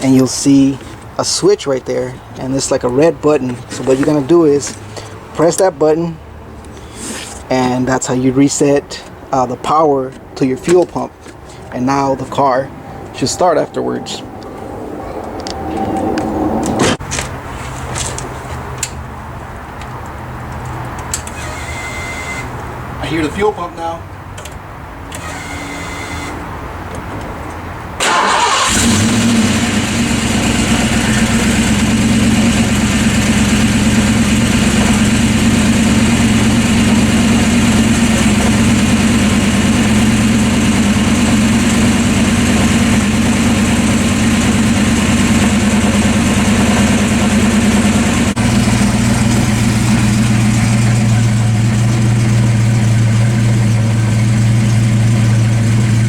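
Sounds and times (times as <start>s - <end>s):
engine starting and idling: 21.1s - 22.5s, 25.1s - 26.3s, 28.0s - 56.0s.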